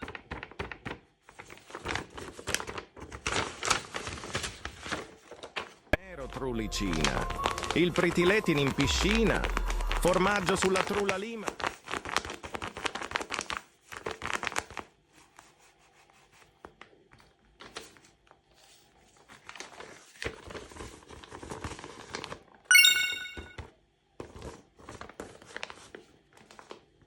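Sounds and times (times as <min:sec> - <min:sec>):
paper crinkling and tearing: 0:01.4 - 0:05.9
high chiming sound effect: 0:22.7 - 0:23.6.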